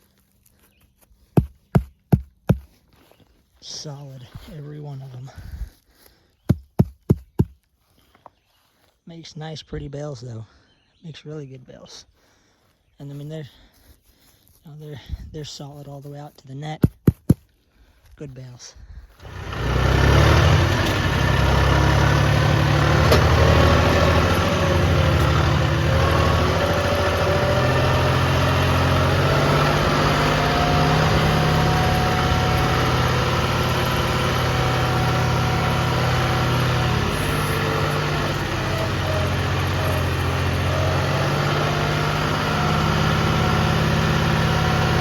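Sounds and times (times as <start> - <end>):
tractor diesel engine running: 19.1 - 45.0
baler whine: 19.2 - 45.0.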